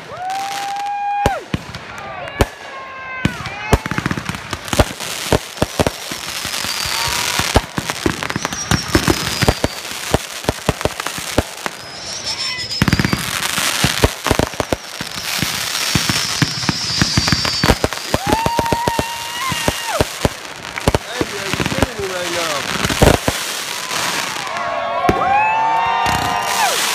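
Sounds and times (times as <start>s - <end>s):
firework crackling: 0.0s - 26.9s
falling whistling tones: 6.5s - 7.4s, 8.1s - 10.0s, 11.4s - 19.8s
firework shell bursts: 11.4s - 18.4s.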